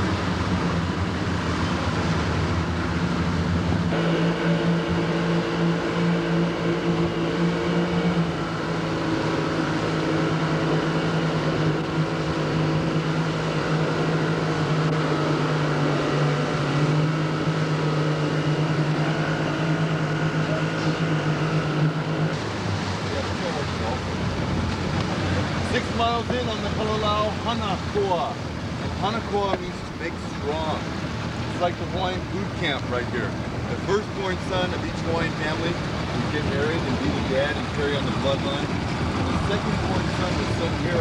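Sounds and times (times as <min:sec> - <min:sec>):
boat motor running: 0:00.0 - 0:41.0.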